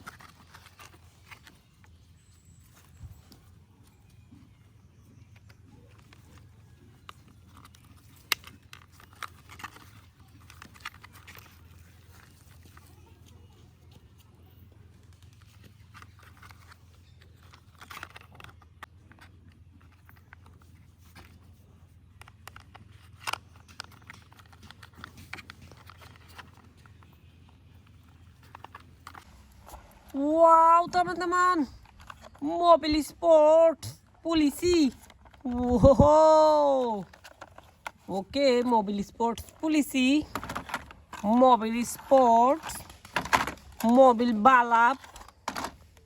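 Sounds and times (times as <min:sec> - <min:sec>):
plastic toy parts clicking: 0:05.4 - 0:12.8, 0:15.4 - 0:21.3, 0:22.2 - 0:27.1, 0:27.8 - 0:29.3, 0:31.2 - 0:32.4, 0:37.0 - 0:46.0.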